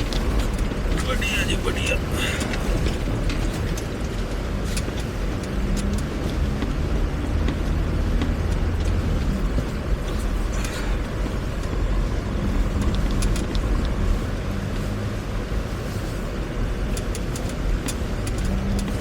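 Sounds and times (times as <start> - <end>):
engine and tyre rumble: 0.0 - 19.0.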